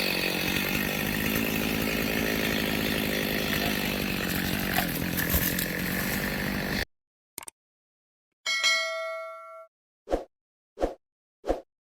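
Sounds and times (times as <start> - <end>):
chainsaw running: 0.0 - 6.9
bell-like chime: 8.5 - 9.7.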